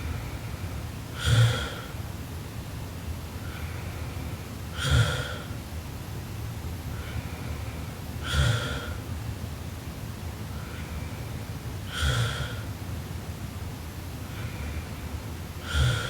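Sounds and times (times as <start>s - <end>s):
woman snoring: 1.2s - 1.9s, 4.8s - 5.5s, 8.2s - 9.0s, 11.9s - 12.6s, 15.6s - 16.0s
faint breath: 10.5s - 12.7s, 14.2s - 16.0s.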